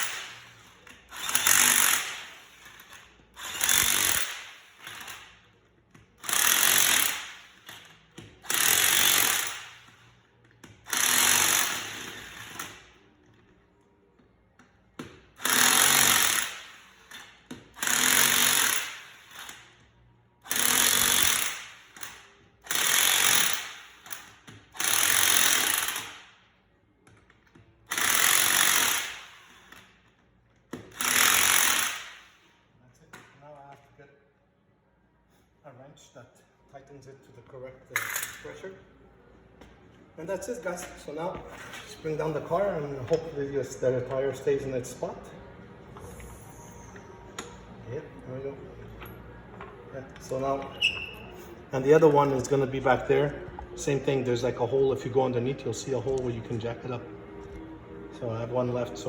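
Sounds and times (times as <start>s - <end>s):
impact wrench rattling: 0.0s - 13.4s, 15.0s - 19.8s, 20.5s - 26.3s, 27.2s - 32.4s.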